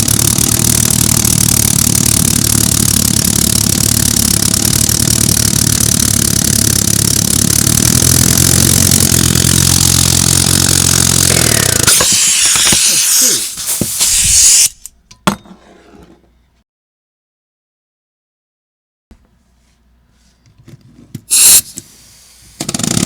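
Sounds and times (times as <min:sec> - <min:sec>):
compressed-air engine running: 0:00.0 - 0:14.9
loud air hiss: 0:11.9 - 0:14.9
sharp click: 0:11.9 - 0:15.0.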